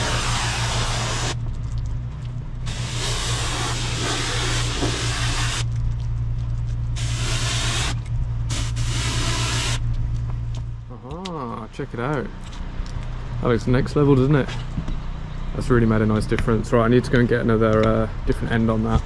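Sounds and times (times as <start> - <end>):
high-pressure water spray hissing: 0.0 - 1.4, 2.7 - 5.7, 7.0 - 9.8
pressure washer engine running: 0.0 - 1.4, 2.7 - 5.6, 7.0 - 9.8.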